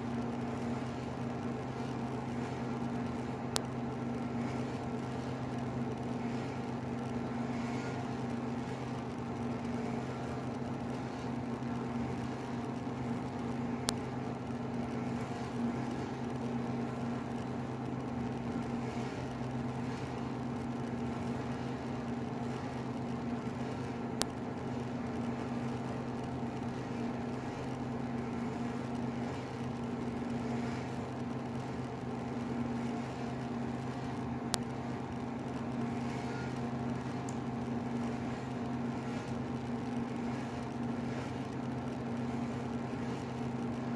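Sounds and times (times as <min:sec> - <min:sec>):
steady motor hum: 0:00.0 - 0:43.9.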